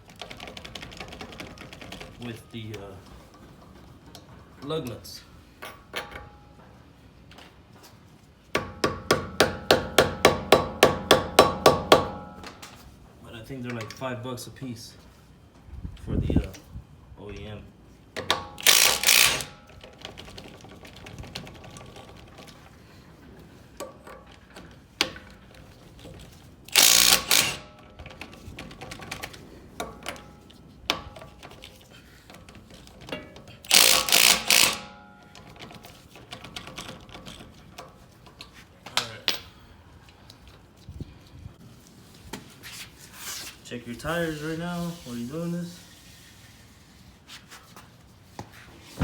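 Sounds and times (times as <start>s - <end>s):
impact wrench hammering: 8.5s - 12.6s, 18.2s - 19.6s, 26.7s - 27.7s, 33.2s - 35.5s
tool clicks and knocks: 18.2s - 22.2s, 32.3s - 39.6s.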